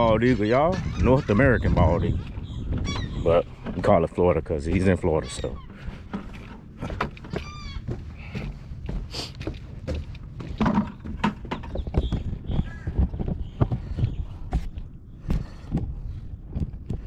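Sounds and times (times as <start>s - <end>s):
wind rumbling on microphone: 0.0s - 17.0s
footstep-like knocks: 1.8s - 17.0s.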